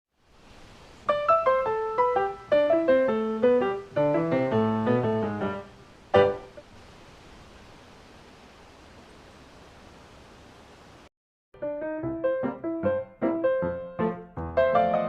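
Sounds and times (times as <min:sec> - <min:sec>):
bright piano melody: 0:01.1 - 0:06.6, 0:11.6 - 0:15.0.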